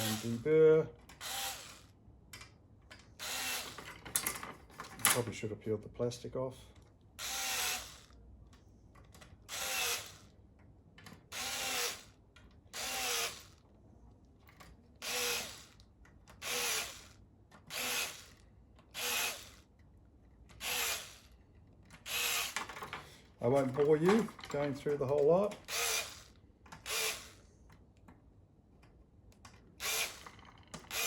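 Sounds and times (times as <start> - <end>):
power drill bursts: 0.0 - 0.5, 1.2 - 1.8, 3.2 - 3.8, 7.2 - 8.1, 9.5 - 10.2, 11.3 - 12.1, 12.8 - 13.6, 15.0 - 15.8, 16.4 - 17.1, 17.7 - 18.4, 19.0 - 19.6, 20.6 - 21.3, 22.0 - 22.6, 25.6 - 27.4, 29.8 - 31.0.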